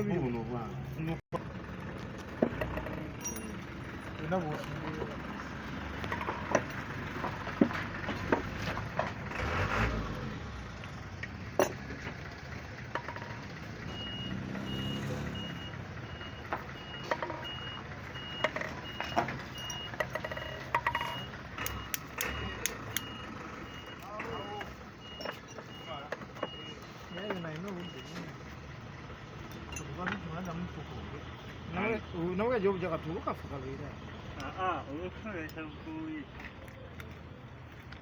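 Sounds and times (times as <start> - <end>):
low engine rumble: 0.0 - 38.0
reversing alarm beeping: 4.9 - 5.6, 13.8 - 28.2
sharp clicks and knocks: 6.0 - 9.3, 16.5 - 23.2.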